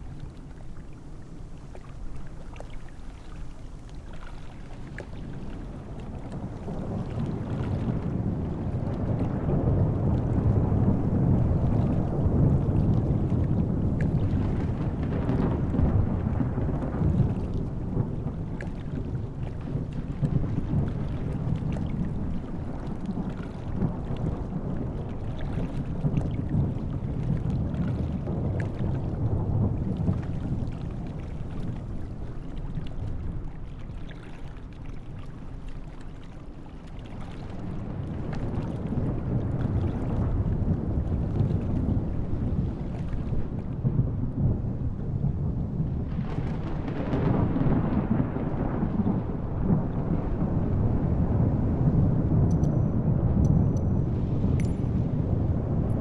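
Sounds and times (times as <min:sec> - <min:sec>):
helicopter low rumble: 0:50.2 - 0:56.0.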